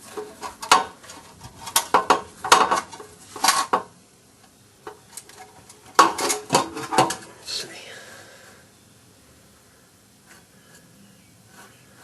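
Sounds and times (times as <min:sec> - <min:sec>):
metal clanking and clinking: 0:05.2 - 0:07.3.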